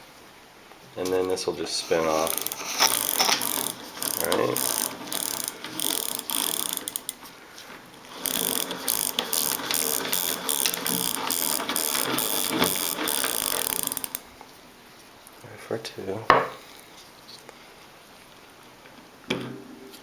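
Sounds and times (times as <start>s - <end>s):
bicycle freewheel ratcheting clicks: 1.8s - 7.3s, 7.9s - 14.3s.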